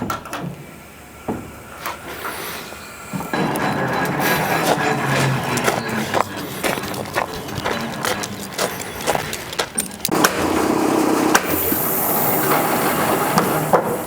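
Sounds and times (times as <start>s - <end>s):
engine humming steadily: 3.0s - 14.0s.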